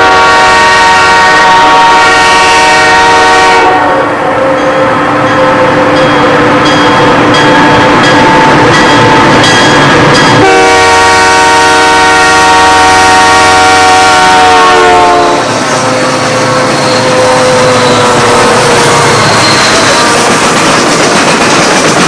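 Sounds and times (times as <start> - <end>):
locomotive horn blast: 0.0 - 6.0, 10.4 - 19.4
heavy train running on rails: 0.0 - 22.0.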